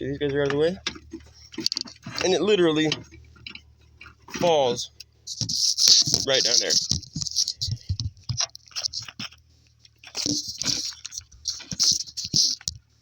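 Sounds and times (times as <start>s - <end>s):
rustling handling noise: 0.0s - 13.0s
metal clicks and knocks: 0.2s - 9.2s.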